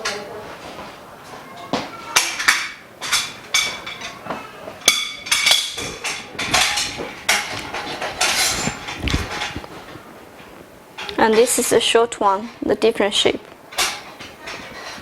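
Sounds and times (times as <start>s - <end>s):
metal frame bars knocking and clinking: 2.2s - 9.8s, 13.7s - 15.0s.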